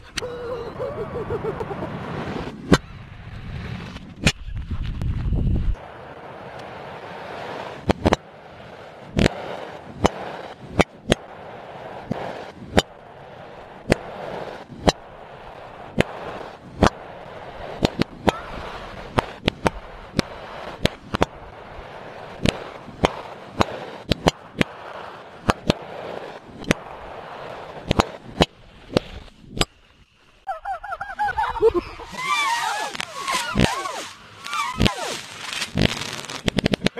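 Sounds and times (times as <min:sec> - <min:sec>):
crackling hiss: 0:00.0 - 0:36.9
fireworks bangs: 0:05.7 - 0:29.6, 0:32.0 - 0:36.9.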